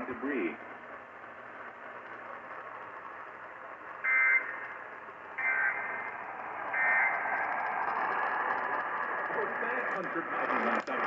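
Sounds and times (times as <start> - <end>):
radio hiss: 3.6 - 11.0
warbling two-tone data bursts: 5.4 - 7.6.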